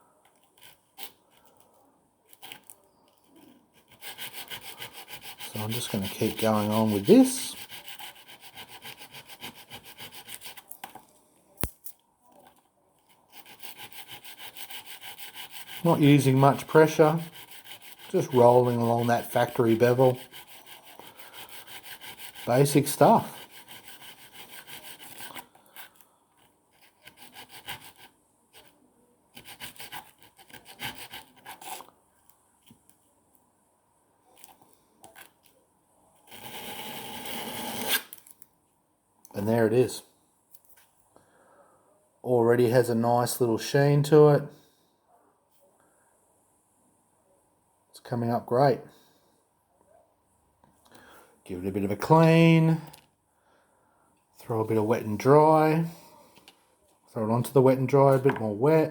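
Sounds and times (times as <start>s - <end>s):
blade rubbed on sandpaper: 3.8s - 10.6s, 13.4s - 25.4s.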